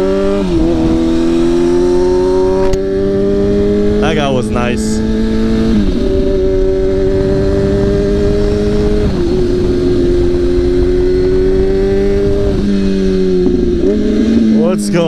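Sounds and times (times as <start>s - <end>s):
motorcycle engine cruising: 0.0s - 15.0s
wind rumble: 3.1s - 14.6s.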